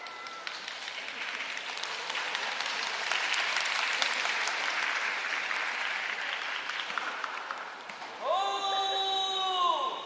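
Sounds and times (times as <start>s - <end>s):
crowd applauding: 0.0s - 7.8s.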